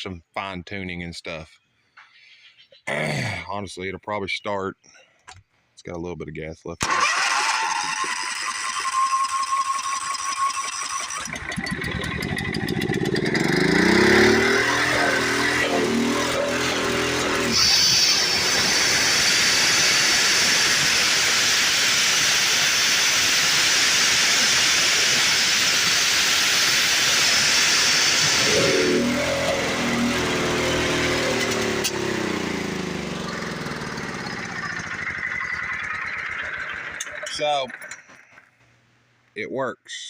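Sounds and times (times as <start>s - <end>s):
saw chain cutting log: 6.8s - 38.5s
gas engine running: 6.8s - 38.6s.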